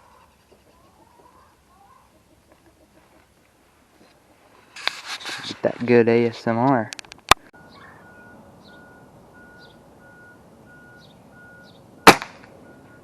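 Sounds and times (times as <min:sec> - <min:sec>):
small birds chirping: 0:07.6 - 0:09.8, 0:10.8 - 0:11.9
repeating beep: 0:07.6 - 0:13.0
pellet gun shot: 0:12.0 - 0:12.5.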